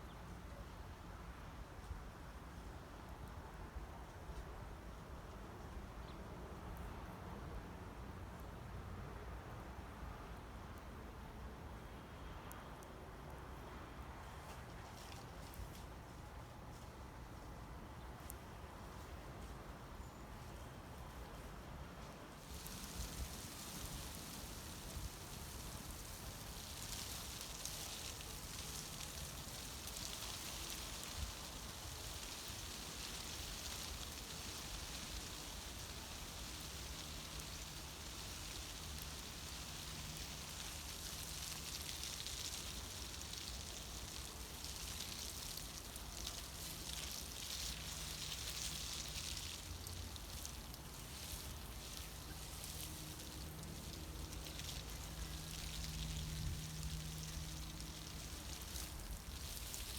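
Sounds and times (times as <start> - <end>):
campfire hissing and crackling: 22.3 - 59.9.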